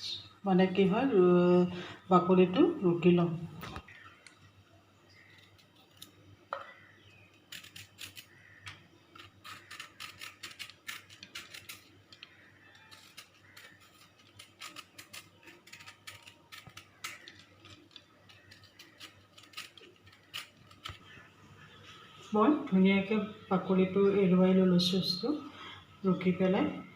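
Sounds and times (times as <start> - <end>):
scraping skin off gourds: 7.5 - 22.1.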